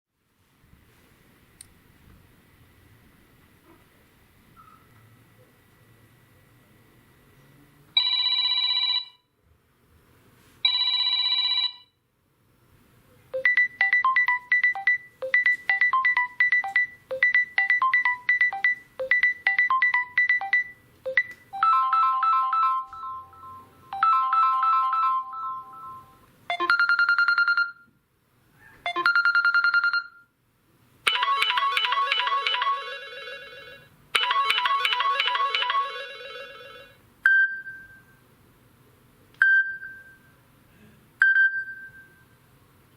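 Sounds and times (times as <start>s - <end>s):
electronic ringtone tunes: 13.4s - 27.9s, 28.9s - 30.3s, 31.1s - 38.2s, 39.4s - 40.3s, 41.2s - 42.2s.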